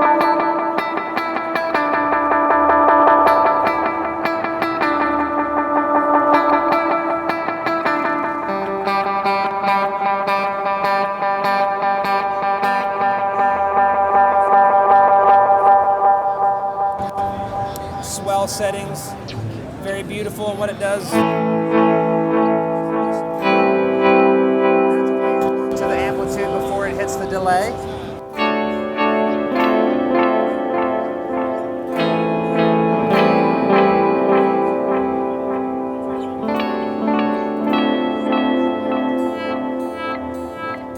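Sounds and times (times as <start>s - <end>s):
electric guitar delay echoes: 0.0s - 40.9s.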